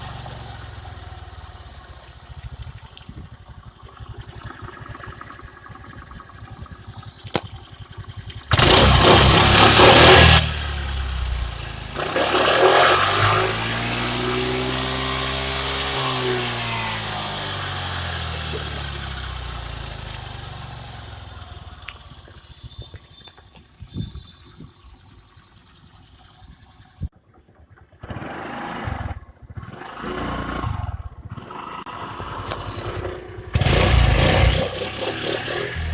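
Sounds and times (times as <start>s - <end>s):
scooter engine revving: 0.0s - 35.9s
loud rushing exhaust bursts: 8.5s - 18.4s, 29.8s - 35.9s.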